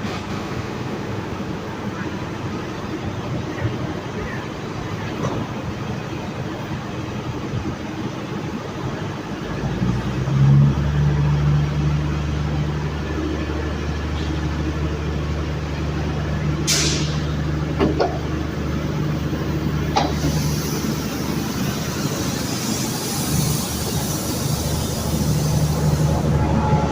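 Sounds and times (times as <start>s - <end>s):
train diesel engine revving: 6.1s - 26.9s
air hiss: 16.7s - 17.2s, 20.0s - 26.4s.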